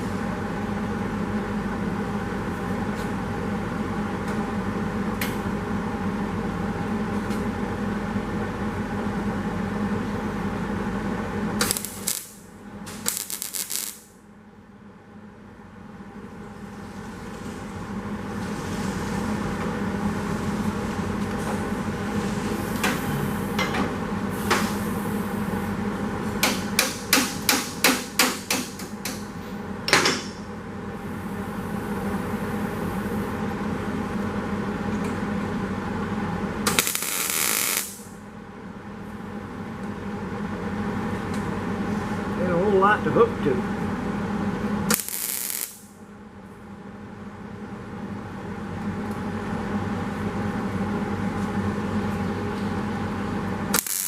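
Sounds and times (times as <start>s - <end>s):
background hum: 0.0s - 18.4s, 19.2s - 54.0s
hammer striking sheet metal: 26.4s - 28.8s.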